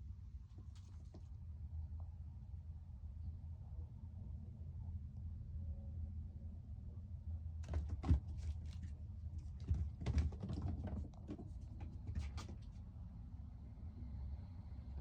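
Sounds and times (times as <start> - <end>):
low steady hum: 0.0 - 15.0
kitten paws scampering on hard surface: 7.7 - 12.8.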